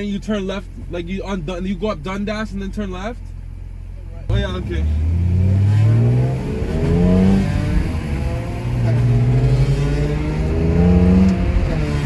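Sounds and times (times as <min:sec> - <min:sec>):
car engine accelerating hard: 0:04.2 - 0:12.0.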